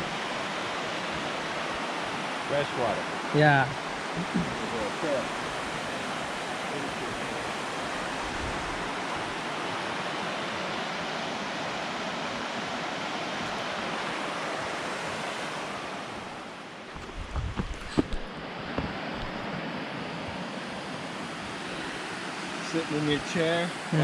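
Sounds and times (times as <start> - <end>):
river rushing: 0.0 - 24.0
low thumps and clicks: 4.2 - 4.7, 17.0 - 19.4.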